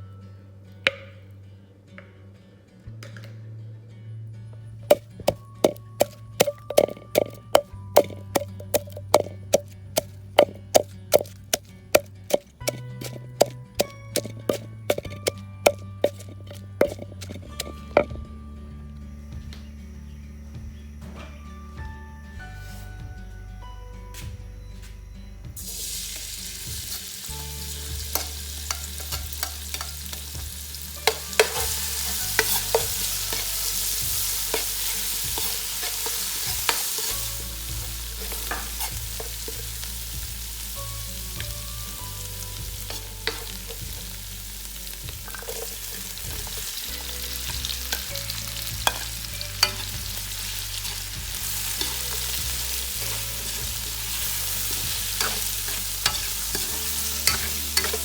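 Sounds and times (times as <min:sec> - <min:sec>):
utensil knocking against pan: 0:04.9 - 0:18.2
food sizzling in a pan: 0:25.6 - 0:58.0.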